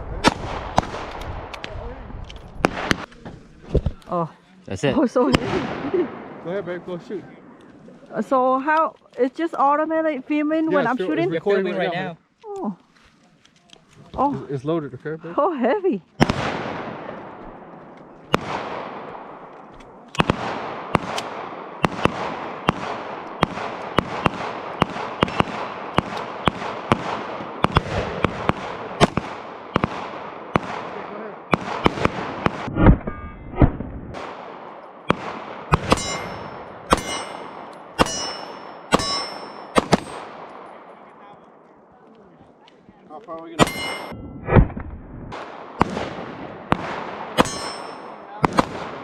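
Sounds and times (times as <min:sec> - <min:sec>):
pistol shots echoing: 0:18.2 - 0:19.5, 0:20.1 - 0:32.7, 0:34.1 - 0:40.9, 0:43.6 - 0:44.1, 0:45.3 - 0:49.0
ringing metallic tone: 0:33.0 - 0:33.5, 0:35.8 - 0:40.2, 0:43.6 - 0:44.5, 0:47.4 - 0:48.3.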